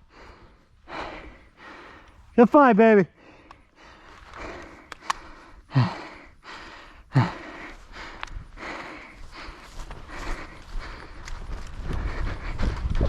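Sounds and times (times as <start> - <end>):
person breathing hard: 0.0 - 2.4, 3.1 - 13.0
sharp clicks: 3.4 - 3.7, 4.3 - 5.5.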